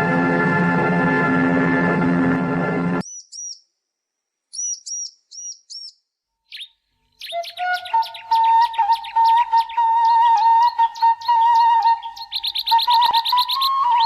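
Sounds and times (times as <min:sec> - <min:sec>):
music: 0:00.0 - 0:03.0, 0:07.3 - 0:14.0
small birds chirping: 0:03.0 - 0:03.8, 0:04.5 - 0:14.0
steady whistled tone: 0:06.6 - 0:14.0.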